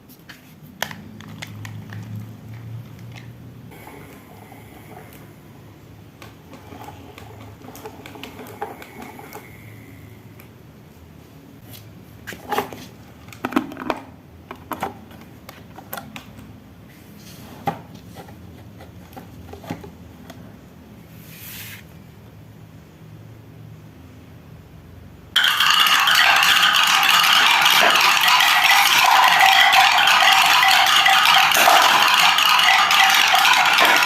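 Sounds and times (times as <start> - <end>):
marbles rolling down wooden ramp: 6.4 - 9.4, 25.4 - 34.0.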